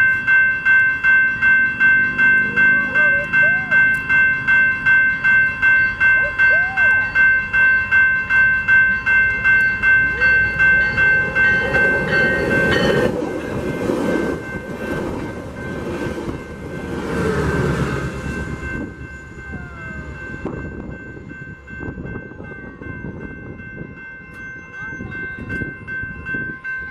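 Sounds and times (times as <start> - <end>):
railroad crossing bell ringing: 0.0 - 26.9
train rumbling past: 0.0 - 26.9.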